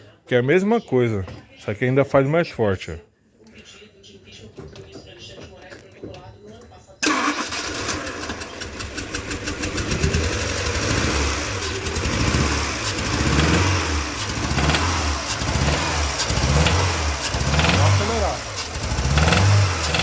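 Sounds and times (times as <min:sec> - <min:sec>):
car engine revving: 0:07.0 - 0:20.0
engine knocking and pinging: 0:07.0 - 0:20.0.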